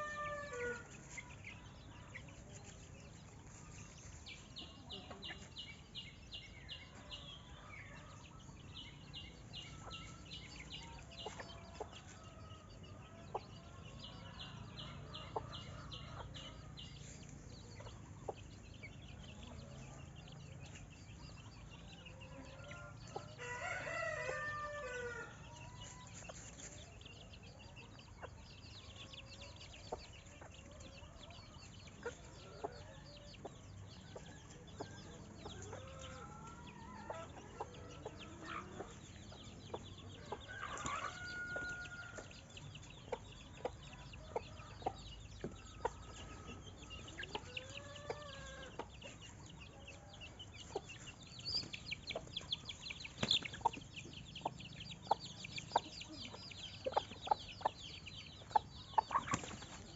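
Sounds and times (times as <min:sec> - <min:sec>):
rooster crowing: 0:00.0 - 0:00.8, 0:23.4 - 0:25.3, 0:40.4 - 0:42.2
chickens clucking: 0:00.0 - 0:59.9.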